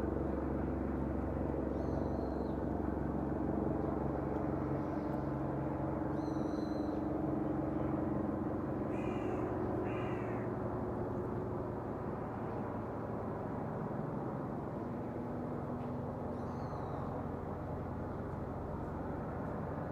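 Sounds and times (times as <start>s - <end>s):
steady low hum: 0.0s - 19.9s.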